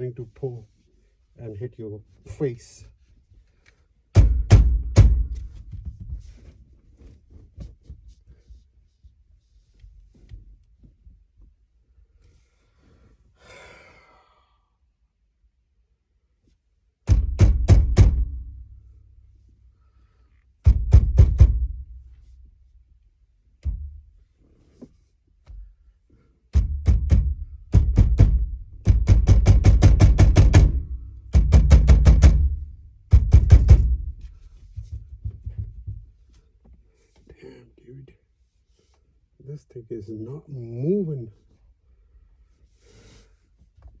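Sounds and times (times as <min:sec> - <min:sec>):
rapid heavy thumps on steering wheel: 0:04.2 - 0:06.5, 0:17.1 - 0:18.9, 0:20.6 - 0:22.3, 0:26.6 - 0:36.8.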